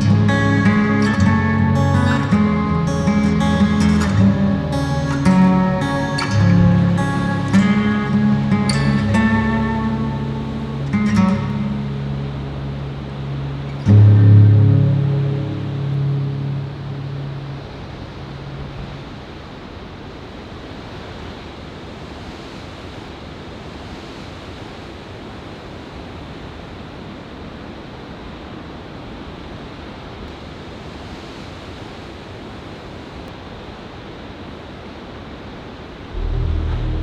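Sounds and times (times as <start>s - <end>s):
ocean surf washing: 0.0s - 14.1s, 14.9s - 37.0s
background music: 0.0s - 17.7s.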